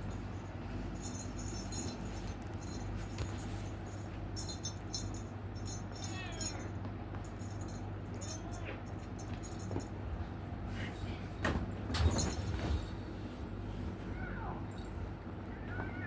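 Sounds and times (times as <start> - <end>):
steady low hum: 0.0 - 16.0
faint cat cries: 6.0 - 6.7, 14.0 - 14.7, 15.4 - 16.0.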